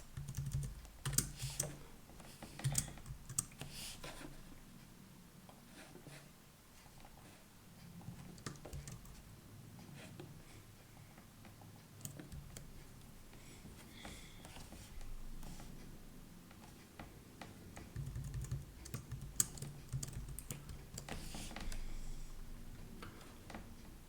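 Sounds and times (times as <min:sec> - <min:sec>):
typing on keyboard: 0:00.0 - 0:01.8, 0:02.5 - 0:03.7, 0:08.1 - 0:09.2, 0:12.0 - 0:12.7, 0:17.7 - 0:21.8.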